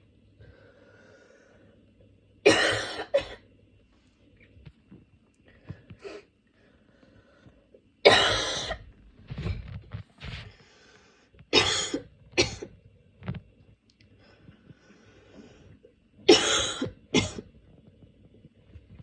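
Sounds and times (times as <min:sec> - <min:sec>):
breathing: 0:00.4 - 0:01.9, 0:05.4 - 0:07.8, 0:10.2 - 0:11.5, 0:14.1 - 0:15.9
woman coughing: 0:02.5 - 0:03.4, 0:08.1 - 0:08.8, 0:11.6 - 0:12.7, 0:16.3 - 0:17.4.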